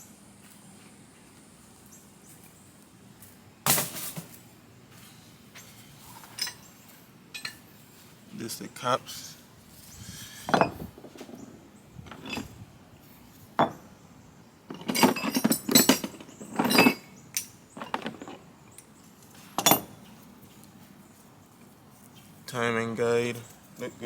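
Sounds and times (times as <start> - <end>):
metal engine parts clinking: 6.1 - 6.7, 7.3 - 7.7, 10.2 - 11.0, 12.1 - 12.6, 14.7 - 18.4, 19.3 - 20.1.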